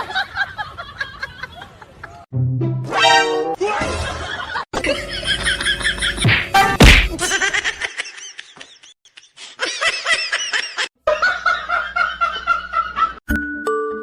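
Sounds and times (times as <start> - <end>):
people giggling: 0.0 - 2.3, 3.8 - 6.3, 7.1 - 13.2.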